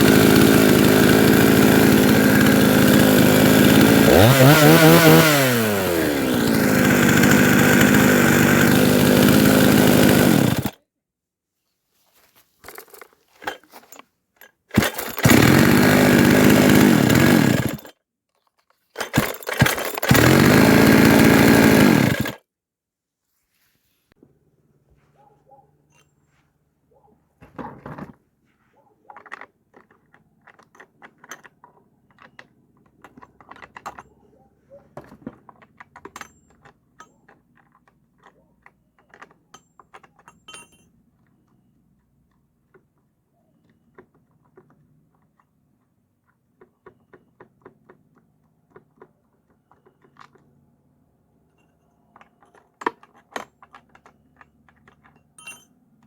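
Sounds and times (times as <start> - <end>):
hand tools clicking and clinking: 12.6 - 21.2, 29.0 - 41.5, 51.5 - 55.8.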